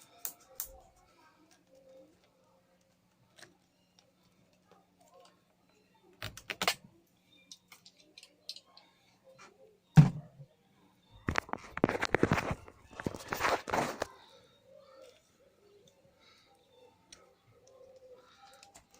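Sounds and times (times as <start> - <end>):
rustling and crackling: 11.2 - 14.4.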